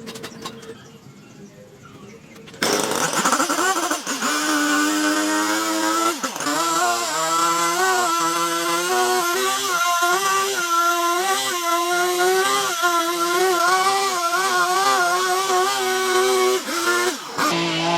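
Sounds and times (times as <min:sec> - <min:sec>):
power tool cutting wood: 0:02.6 - 0:17.9.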